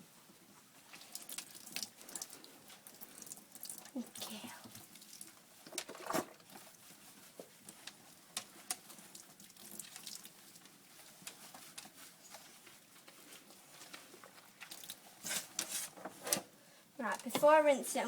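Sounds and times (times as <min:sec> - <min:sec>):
wet rubbing of dog's coat: 0:06.2 - 0:16.0
small clicks and pats: 0:07.4 - 0:15.8.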